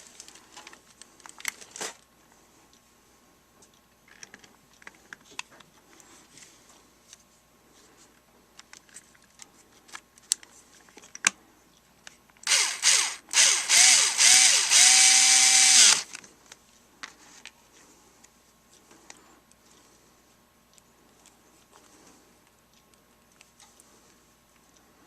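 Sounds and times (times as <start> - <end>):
cordless screwdriver motor spinning: 12.4 - 16.1.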